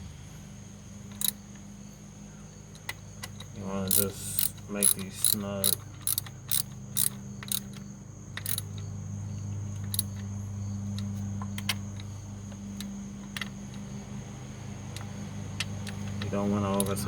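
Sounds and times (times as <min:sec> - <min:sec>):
steady low hum: 0:00.0 - 0:17.0
socket ratchet clicks: 0:01.1 - 0:01.4, 0:02.7 - 0:08.9, 0:09.8 - 0:10.2.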